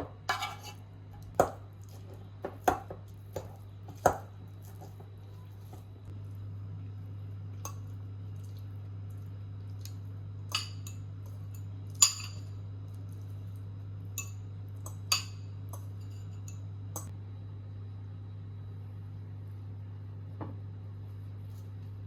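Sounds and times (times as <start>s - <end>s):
kitchen utensils and dishes clinking: 0.0s - 5.5s, 10.5s - 12.6s
steady low hum: 0.0s - 22.0s.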